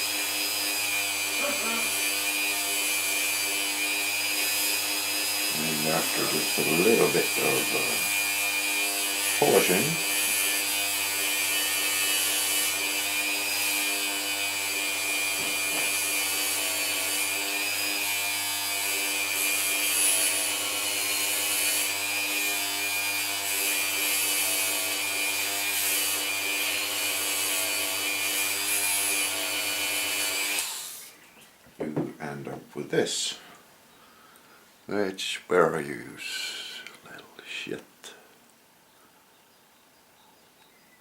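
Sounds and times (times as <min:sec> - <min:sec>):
rotary tool buffing metal: 0:00.0 - 0:31.2.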